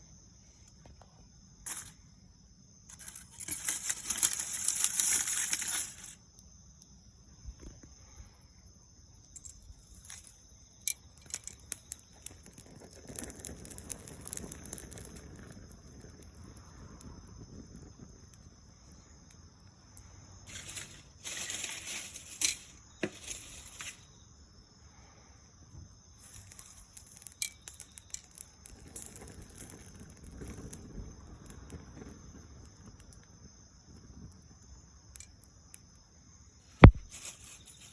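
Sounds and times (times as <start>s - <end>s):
dry leaves rustling and crackling: 2.9s - 6.2s, 20.5s - 24.1s, 37.0s - 37.9s.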